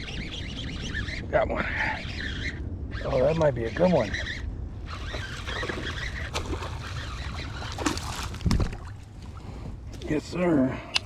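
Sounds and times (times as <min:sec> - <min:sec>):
water sloshing: 0:04.8 - 0:09.5
water splashes: 0:05.0 - 0:09.1.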